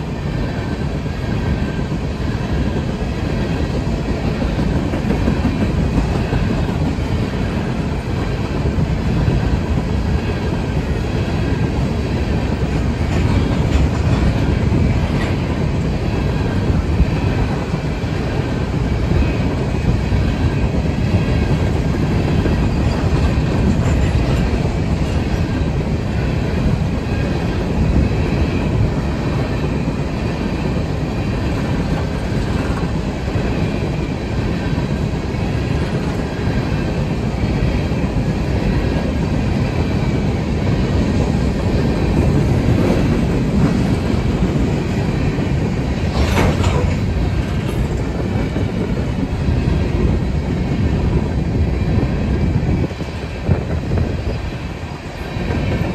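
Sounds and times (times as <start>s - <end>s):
freight train rumbling past: 0.0s - 55.9s
wheels clacking over rails: 46.0s - 48.8s.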